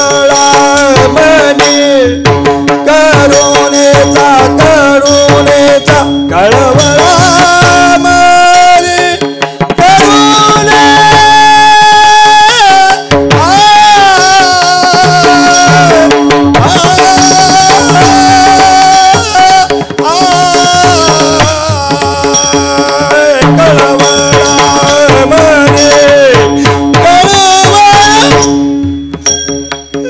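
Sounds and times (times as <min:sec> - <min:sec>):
tabla strokes: 0:00.0 - 0:30.0.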